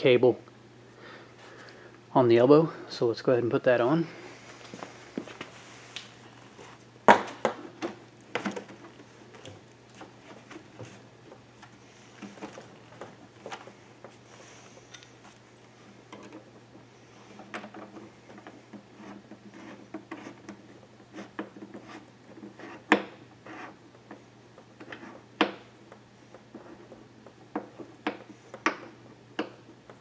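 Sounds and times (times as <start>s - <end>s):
rubbing and handling noises: 8.4s - 23.8s.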